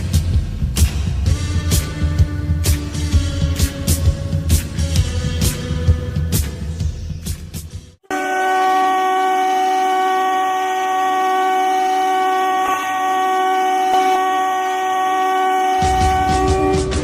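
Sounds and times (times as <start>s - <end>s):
hockey goal horn blast: 8.0s - 17.0s.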